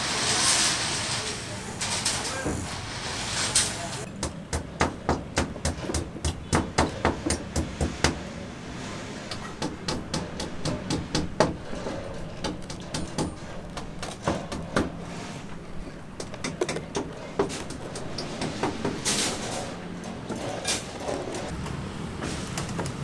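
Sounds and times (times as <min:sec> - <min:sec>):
hammer strikes: 0:04.1 - 0:08.3, 0:09.3 - 0:23.0.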